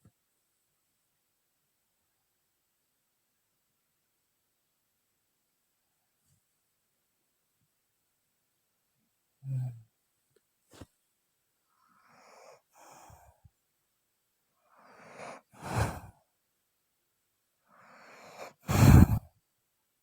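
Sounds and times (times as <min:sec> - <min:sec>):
woman snoring: 0:09.4 - 0:09.8, 0:14.8 - 0:16.1, 0:17.8 - 0:19.3.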